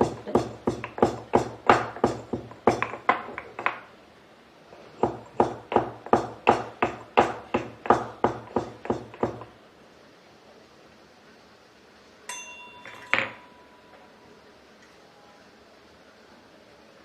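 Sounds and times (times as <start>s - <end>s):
peppercorns crushed by pounding: 0.0s - 3.9s, 5.0s - 9.5s.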